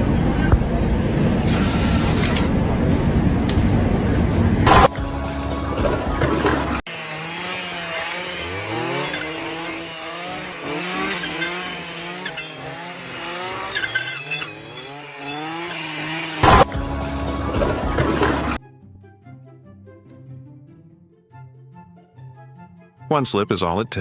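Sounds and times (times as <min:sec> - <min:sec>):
engine revving: 0:04.5 - 0:18.6.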